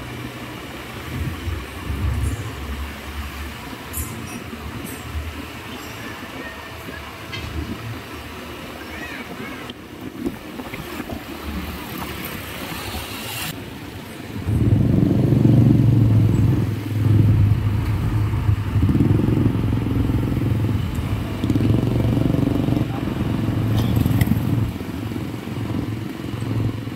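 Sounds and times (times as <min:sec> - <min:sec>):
heavy vehicle engine running: 0:00.0 - 0:09.2, 0:12.9 - 0:26.9.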